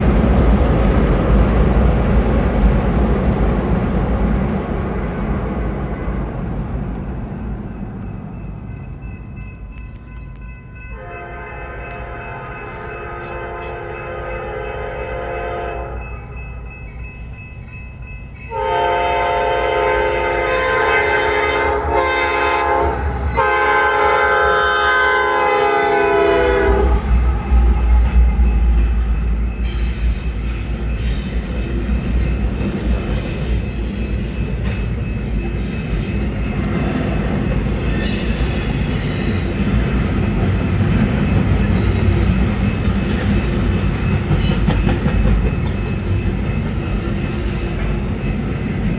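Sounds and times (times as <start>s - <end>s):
locomotive rumble: 0.0s - 48.9s
railcars clattering over rail joints: 0.0s - 48.9s
locomotive air horn blasts: 11.0s - 16.0s, 18.5s - 27.3s
train wheel squeal: 11.8s - 13.9s, 26.6s - 39.8s, 41.2s - 46.6s, 47.2s - 48.6s.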